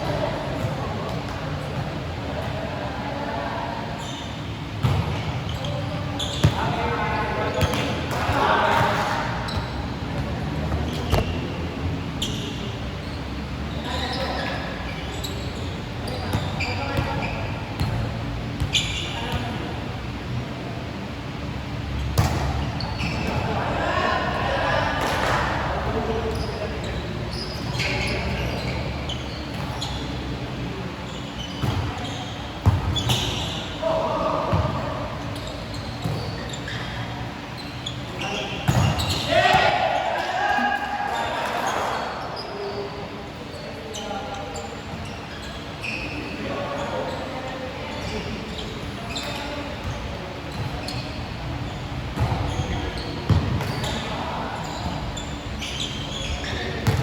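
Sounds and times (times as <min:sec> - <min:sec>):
murmur of the hall: 0:00.0 - 0:57.0
shoe squeaks: 0:04.0 - 0:08.0, 0:09.4 - 0:18.0, 0:18.6 - 0:19.6, 0:21.9 - 0:23.6, 0:26.2 - 0:34.0, 0:34.8 - 0:57.0
basketball bouncing on court: 0:04.8 - 0:05.2, 0:31.6 - 0:33.5.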